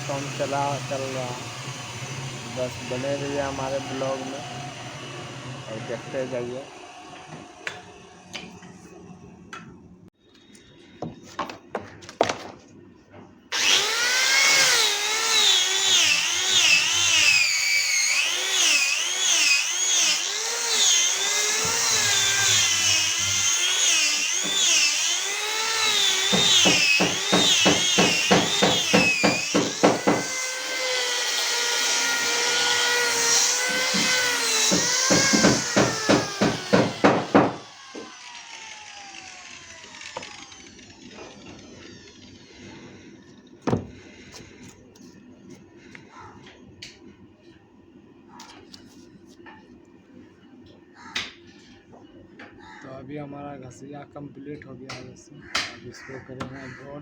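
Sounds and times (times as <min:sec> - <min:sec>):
electric sander on wood: 0:00.0 - 0:08.2, 0:13.5 - 0:44.3.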